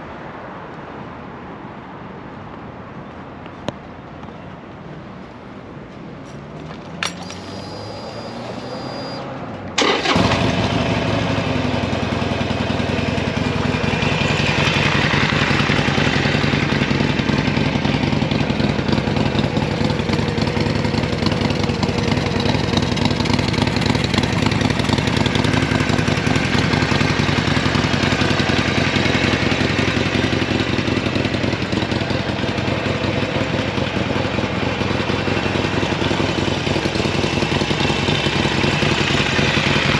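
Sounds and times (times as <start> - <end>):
starter click: 6.8 - 8.8
motorcycle engine idling: 9.8 - 39.9.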